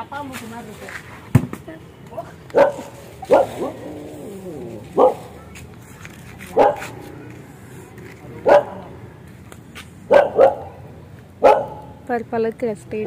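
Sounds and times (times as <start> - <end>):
dog barking: 2.5 - 3.8, 4.9 - 5.4, 6.5 - 7.0, 8.4 - 8.9, 10.1 - 10.8, 11.4 - 12.0.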